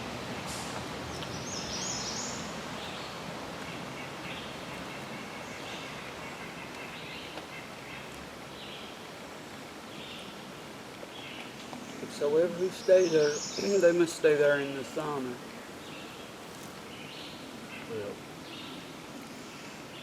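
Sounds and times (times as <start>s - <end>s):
outdoor background noise: 0.0s - 20.0s
short bird calls: 0.6s - 9.0s.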